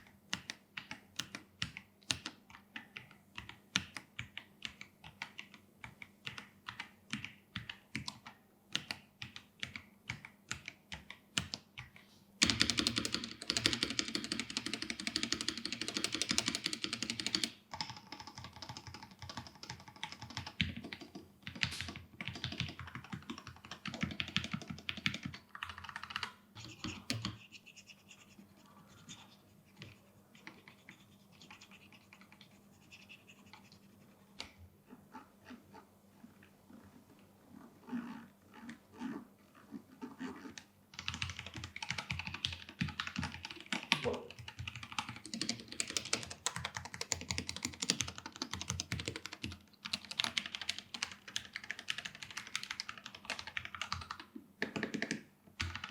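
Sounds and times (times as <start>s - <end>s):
typing on mechanical keyboard: 0.0s - 27.4s, 41.0s - 55.9s.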